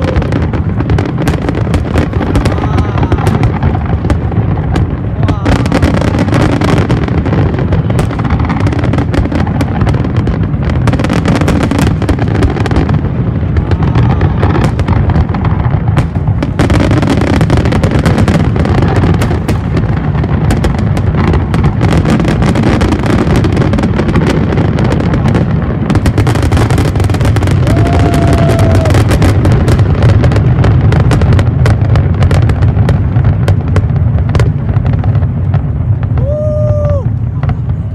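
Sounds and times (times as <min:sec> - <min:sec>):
heavy low rumble: 0:00.0 - 0:10.9, 0:24.0 - 0:37.9
fireworks booms and crackling bangs: 0:00.0 - 0:37.9.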